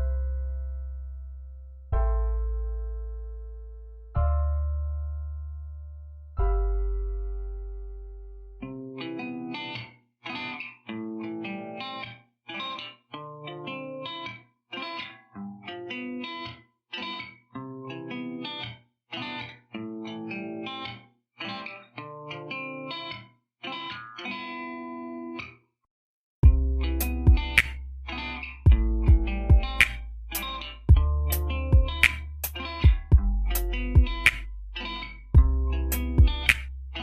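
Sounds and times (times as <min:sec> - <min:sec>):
electric guitar playing choppy chords: 0:26.4 - 0:37.0.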